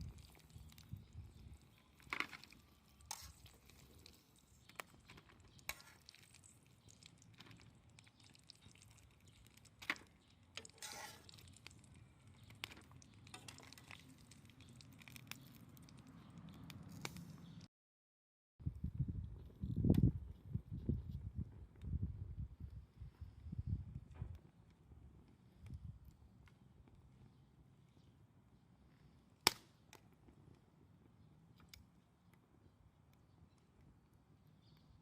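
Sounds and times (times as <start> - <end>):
campfire crackling: 0.0 - 17.7.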